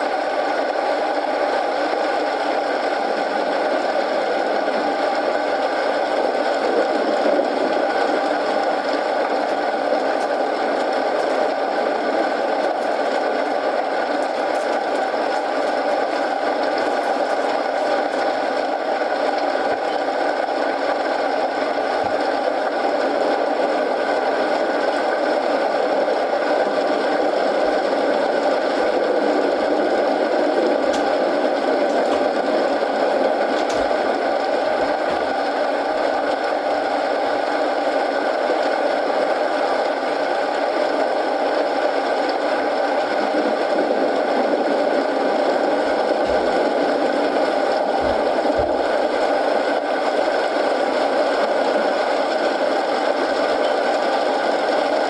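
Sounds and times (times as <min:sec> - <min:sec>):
steady rain: 0:00.0 - 0:55.0
wood fire crackling: 0:08.0 - 0:19.9, 0:26.4 - 0:29.6, 0:30.2 - 0:35.4.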